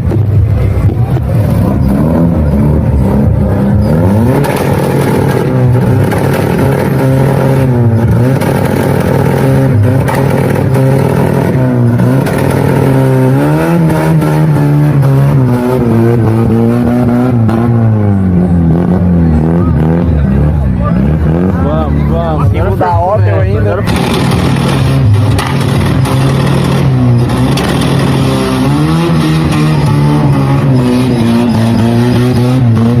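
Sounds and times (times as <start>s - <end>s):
engine revving through loud exhaust: 0.0s - 33.0s
low engine drone: 0.0s - 33.0s.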